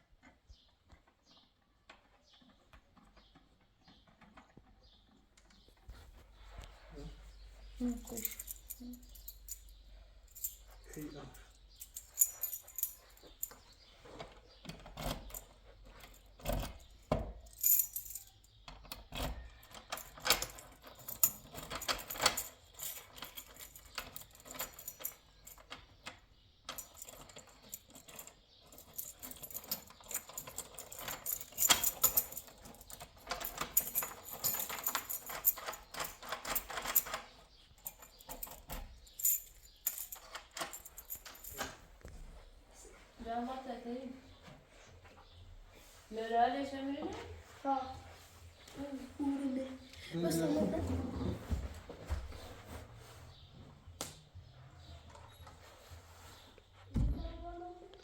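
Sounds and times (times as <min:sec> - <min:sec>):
small metal objects clicking and jangling: 0:07.6 - 0:42.1.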